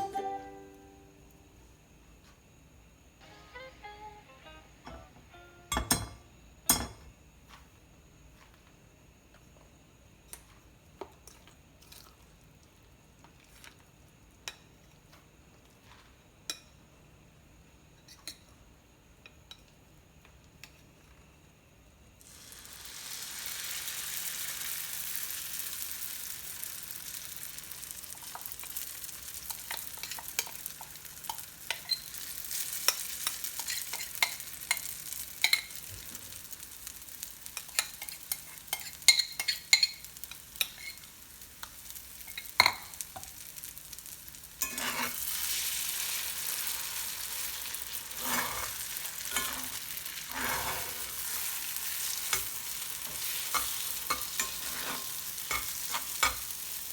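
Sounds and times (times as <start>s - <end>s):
food sizzling in hot oil: 22.2s - 56.9s
spatula scraping and clicking on pan: 29.4s - 35.8s, 37.5s - 43.3s, 44.6s - 45.3s, 48.1s - 56.5s.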